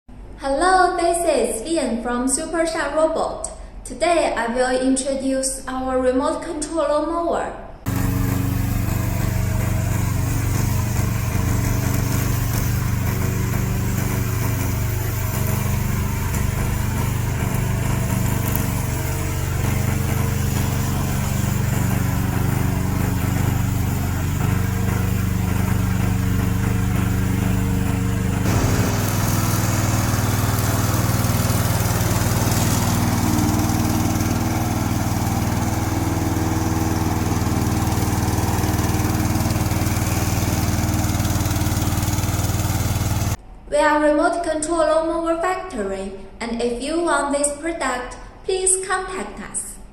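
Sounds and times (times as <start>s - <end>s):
lawn mower engine running: 7.9s - 43.4s.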